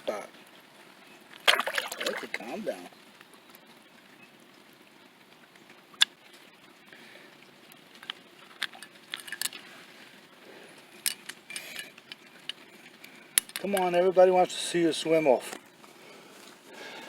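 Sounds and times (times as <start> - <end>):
faint steady hush: 0.0 - 17.0.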